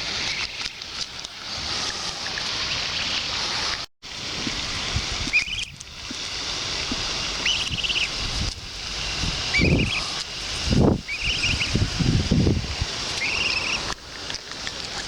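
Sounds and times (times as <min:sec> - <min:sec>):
water: 0:00.0 - 0:15.0
wind: 0:00.0 - 0:15.0
high pulsed bird calls: 0:05.3 - 0:05.8, 0:07.4 - 0:08.2, 0:09.5 - 0:11.9, 0:13.1 - 0:14.0.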